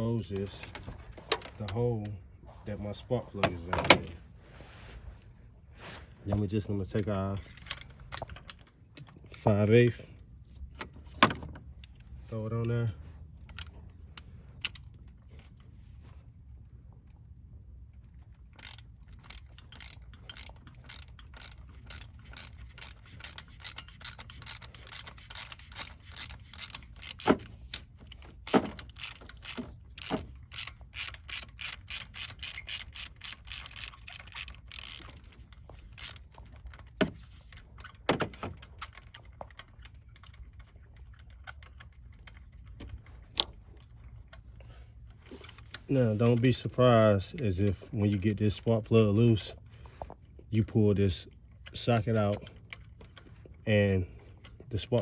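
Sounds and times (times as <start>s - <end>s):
ratchet wrench clicking: 13.4s - 15.0s, 18.5s - 48.8s.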